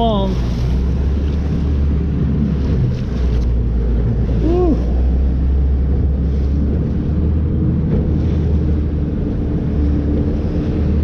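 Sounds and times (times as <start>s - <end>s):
outboard motor rumbling: 0.0s - 11.0s
wind buffeting microphone: 0.0s - 11.0s.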